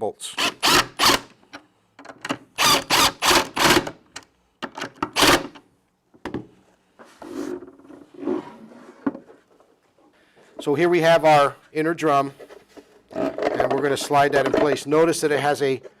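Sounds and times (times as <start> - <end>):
impact driver rattling bursts: 0.4 - 1.5, 2.3 - 5.6.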